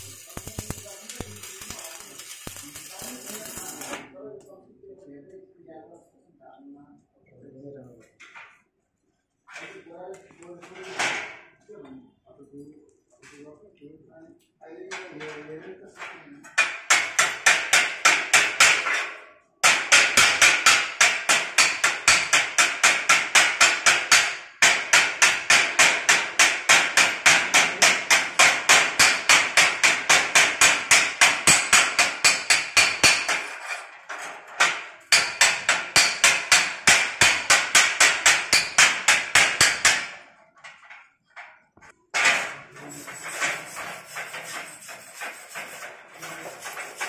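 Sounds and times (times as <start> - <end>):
hammer striking metal: 16.6 - 33.8, 34.6 - 40.2.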